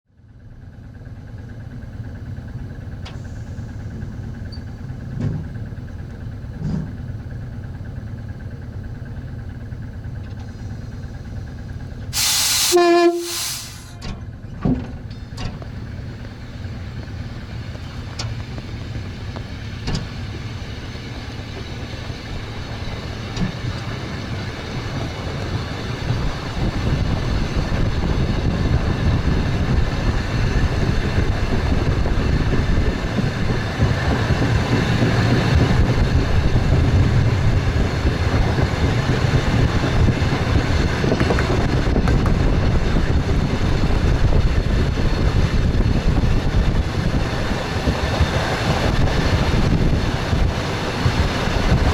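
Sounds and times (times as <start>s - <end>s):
train rumbling on rails: 0.1s - 51.9s
loud hiss with tone: 12.2s - 14.0s.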